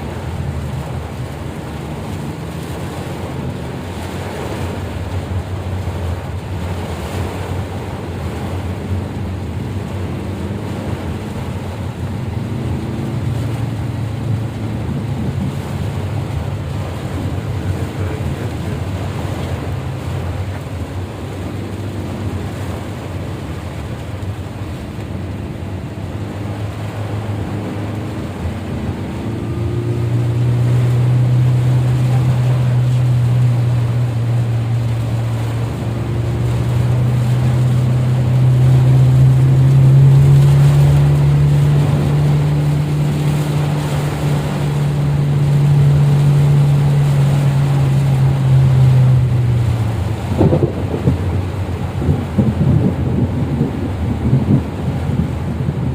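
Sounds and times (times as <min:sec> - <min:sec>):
rushing water: 0:00.0 - 0:55.9
vehicle engine running: 0:00.0 - 0:55.9
wind noise: 0:00.0 - 0:55.9.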